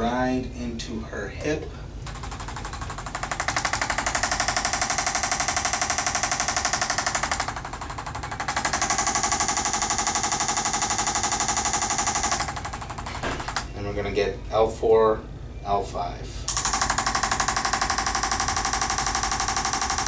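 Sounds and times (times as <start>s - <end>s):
percussion massager hammering: 2.0s - 13.7s, 16.5s - 20.0s.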